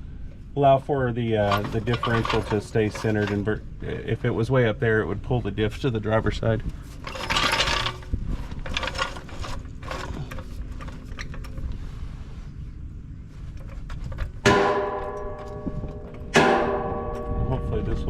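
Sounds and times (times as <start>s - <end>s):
metal tools clanking: 1.4s - 3.6s, 6.6s - 11.8s, 13.5s - 18.0s
ringing metal strike: 14.5s - 18.0s.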